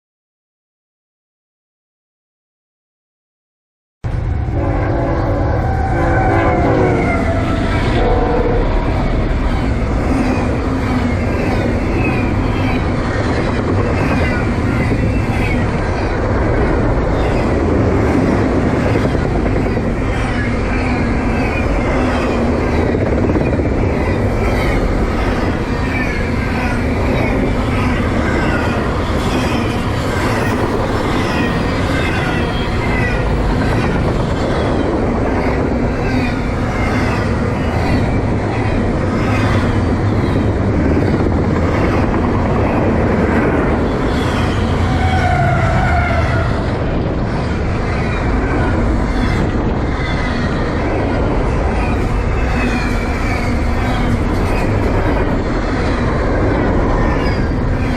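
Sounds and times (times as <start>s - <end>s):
train wheels clickety-clack: 9.4s - 57.9s
wheels squealing: 18.2s - 38.2s.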